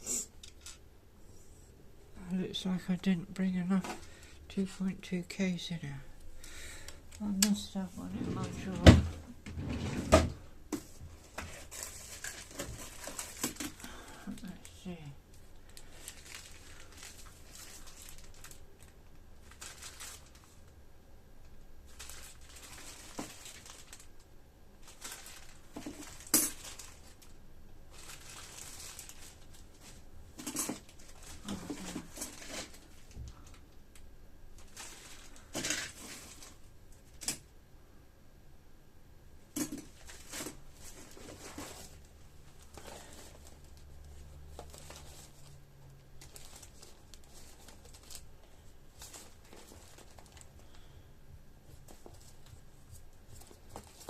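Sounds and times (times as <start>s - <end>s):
small items clattering in drawer: 7.5s - 14.5s, 24.8s - 27.2s, 27.9s - 33.6s, 34.6s - 37.4s, 39.5s - 43.8s.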